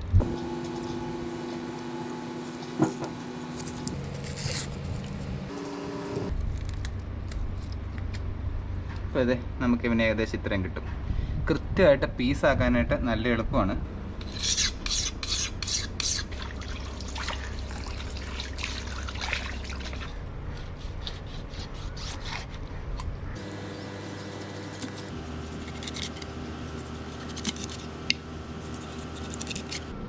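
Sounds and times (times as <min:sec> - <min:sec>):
steady low hum: 0:00.0 - 0:11.8, 0:13.7 - 0:30.0
knife cutting fish: 0:23.8 - 0:29.9.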